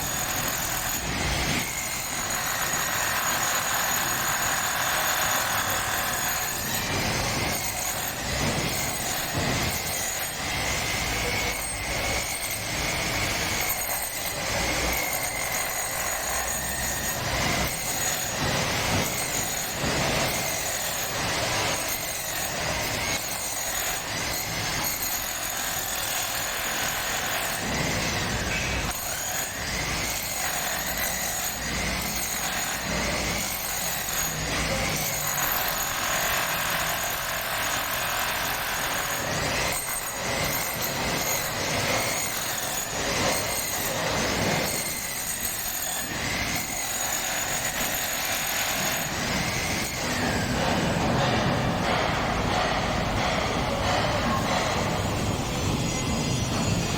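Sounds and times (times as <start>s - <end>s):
power drill boring into concrete: 0.0s - 53.8s.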